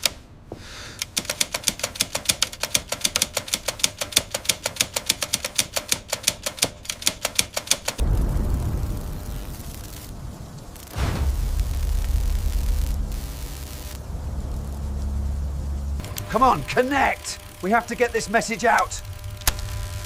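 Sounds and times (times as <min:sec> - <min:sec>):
telegraph key clicking: 0:00.0 - 0:00.2, 0:01.0 - 0:08.0, 0:16.0 - 0:19.8
deep low rumble: 0:08.0 - 0:20.0.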